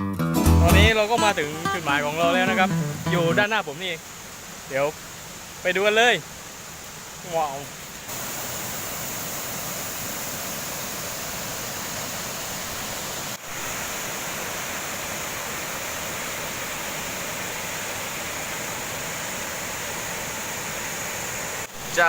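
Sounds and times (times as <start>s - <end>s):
waterfall rushing: 0.6s - 22.0s.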